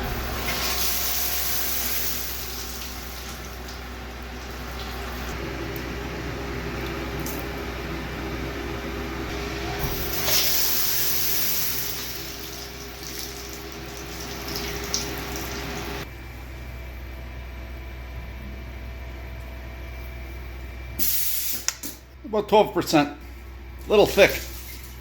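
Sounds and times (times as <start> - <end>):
running water filling a container: 0.1 - 5.4, 9.8 - 16.0, 23.9 - 25.0.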